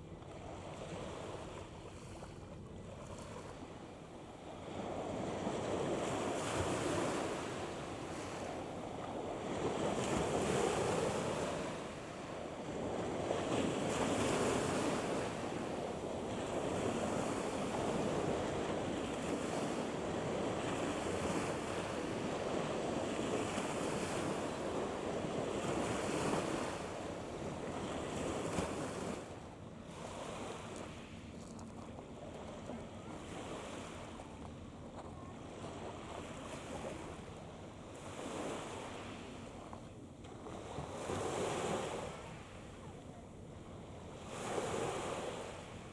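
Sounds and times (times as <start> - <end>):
waves rushing: 4.4 - 31.6, 40.5 - 43.0, 44.2 - 45.9.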